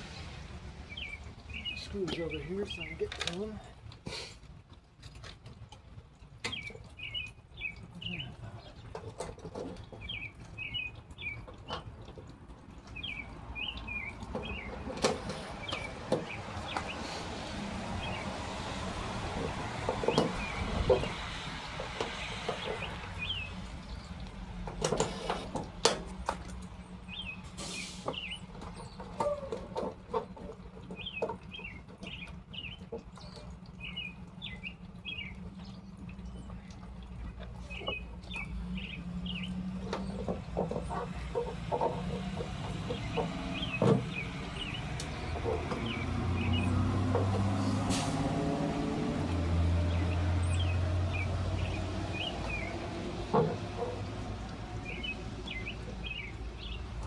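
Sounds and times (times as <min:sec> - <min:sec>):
handling clicks and knocks: 0:01.7 - 0:17.0
small songbird chirping: 0:06.4 - 0:08.8, 0:12.8 - 0:17.1, 0:22.0 - 0:24.3, 0:30.8 - 0:47.8, 0:49.8 - 0:57.0.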